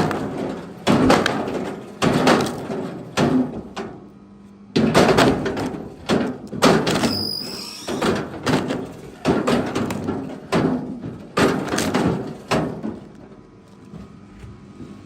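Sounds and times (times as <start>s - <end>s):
firewood thrown onto pile: 0.0s - 4.0s, 8.0s - 13.9s.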